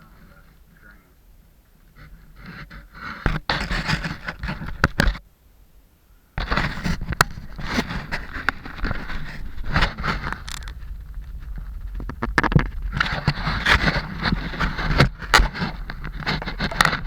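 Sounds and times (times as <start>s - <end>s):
scraping and rubbing: 1.9s - 5.2s, 6.4s - 17.0s
sharp clicks: 9.8s - 13.8s.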